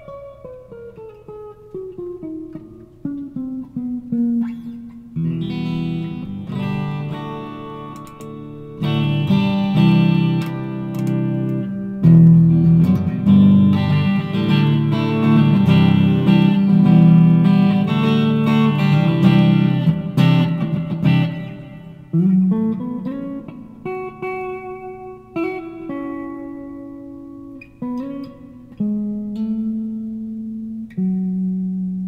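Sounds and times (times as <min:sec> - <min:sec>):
electric guitar picked notes: 0:00.0 - 0:32.0
electric guitar strummed chords: 0:00.0 - 0:32.0.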